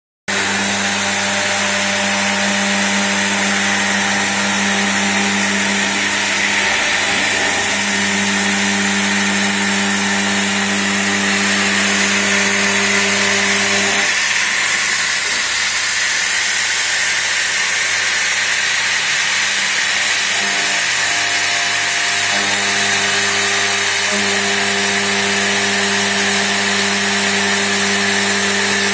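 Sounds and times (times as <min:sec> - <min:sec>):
humming tones: 0:00.3 - 0:15.6
machine cutting with hiss: 0:00.3 - 0:28.9.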